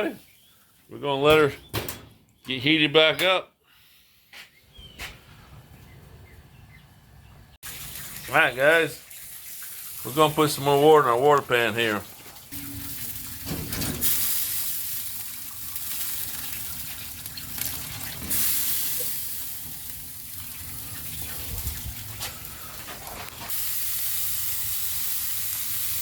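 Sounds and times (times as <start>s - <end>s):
water pouring into a pan: 7.6s - 22.2s.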